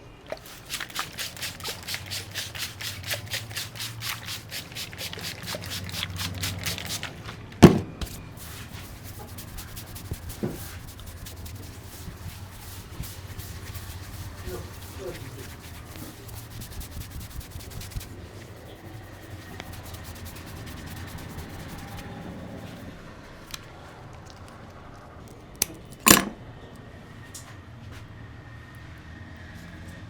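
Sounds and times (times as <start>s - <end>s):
hands rubbing skin and hair: 0.4s - 7.4s, 8.0s - 22.8s.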